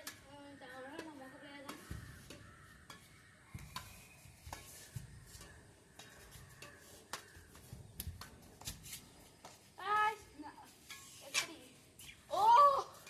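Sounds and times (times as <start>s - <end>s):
rackets striking shuttlecock: 0.0s - 9.6s.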